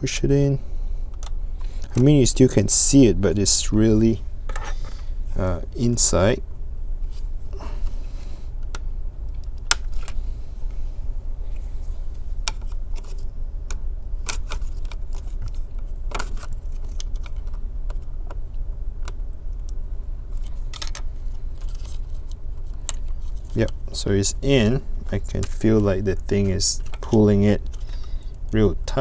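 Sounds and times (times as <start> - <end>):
steady low hum: 0.0 - 29.0
cable connector clicks: 8.6 - 10.2.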